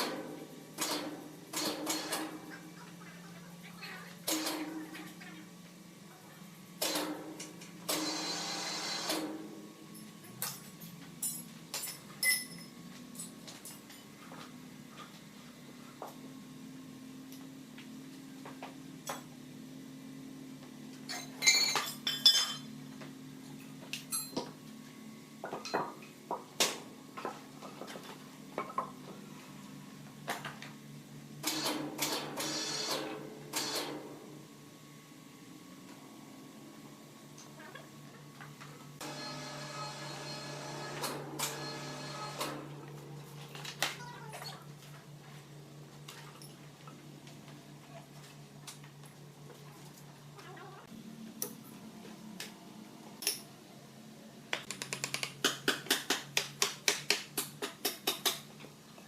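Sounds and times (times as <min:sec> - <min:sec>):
sharp clinks and knocks: 0:10.0 - 0:14.1.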